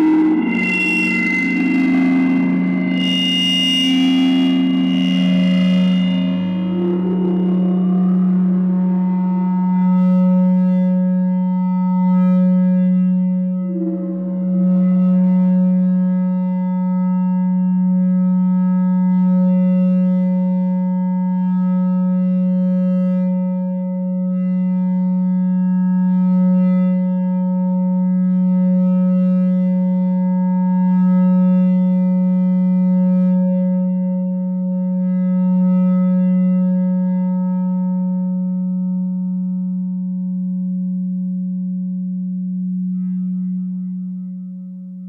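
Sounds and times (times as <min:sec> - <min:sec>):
feedback drone: 0:00.0 - 0:18.7.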